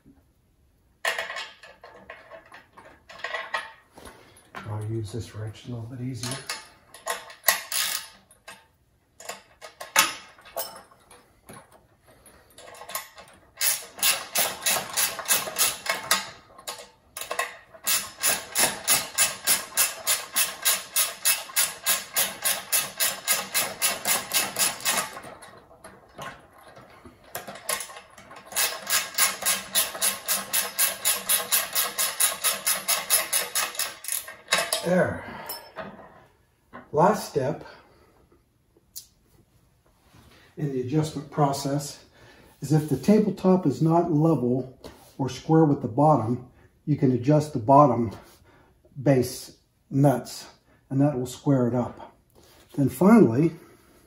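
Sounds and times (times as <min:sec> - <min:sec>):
ratchet wrench clicking: 0:07.0 - 0:08.2, 0:13.6 - 0:25.2, 0:27.4 - 0:34.7.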